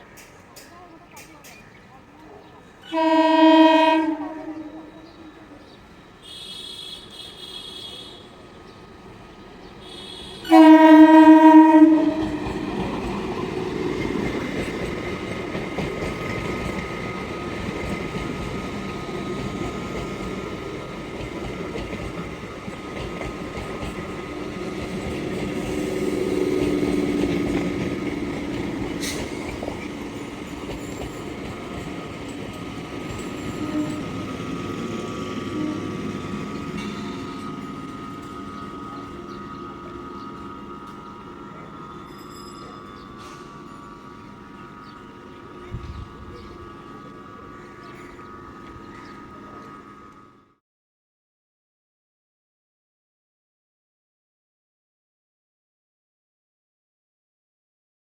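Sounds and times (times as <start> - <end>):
train rumbling past: 0.0 - 50.6
locomotive horn blast: 2.9 - 5.0, 6.2 - 8.4, 9.8 - 12.7, 33.4 - 37.4.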